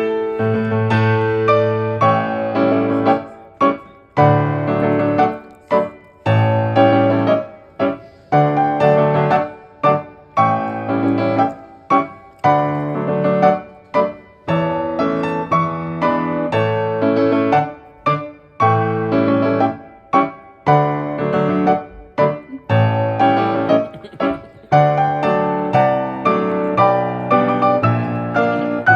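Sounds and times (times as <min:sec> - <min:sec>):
piano melody: 0:00.0 - 0:28.9.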